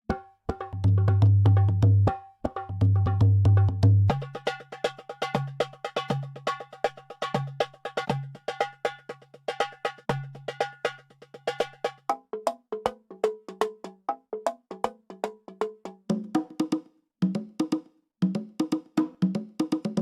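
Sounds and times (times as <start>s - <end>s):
wood-block-like percussive beat: 0.1s - 20.0s
deep bass line: 0.8s - 2.1s, 2.7s - 4.1s.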